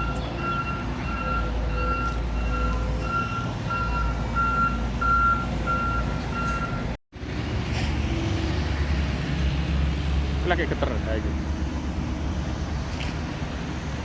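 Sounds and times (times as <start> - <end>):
reversing alarm beeping: 0.0 - 7.0
diesel engine rumble: 0.0 - 14.0.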